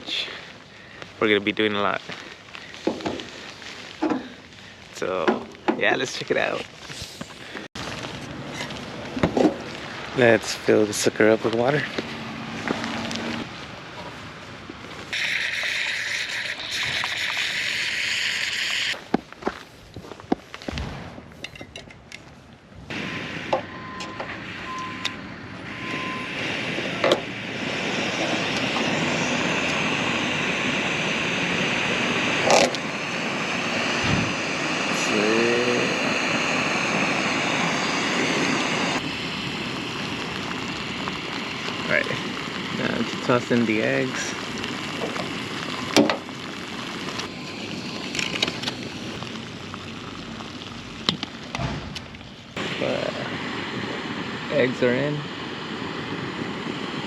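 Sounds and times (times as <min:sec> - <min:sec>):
gas stove burner hissing: 0:15.1 - 0:19.0, 0:22.9 - 0:57.0.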